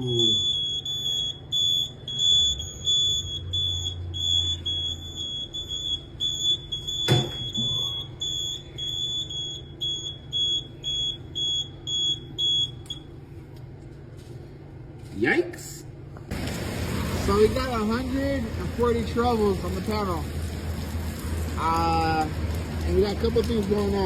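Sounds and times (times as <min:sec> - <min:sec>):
fire alarm beeping: 0:00.0 - 0:13.2.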